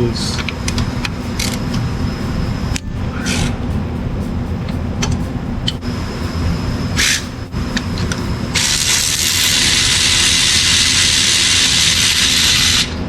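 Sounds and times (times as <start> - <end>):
constant low rumble: 0.0 - 13.0
loud hiss of pressurized jet: 5.8 - 13.0.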